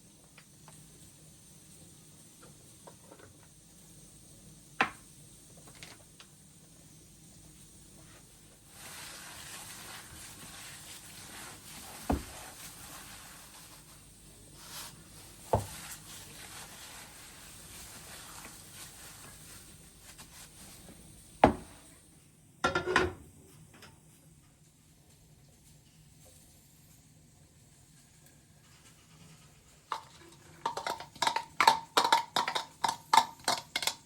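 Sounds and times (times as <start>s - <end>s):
soft steady hiss: 0.0s - 34.0s
objects knocked on hard surface: 30.7s - 34.0s.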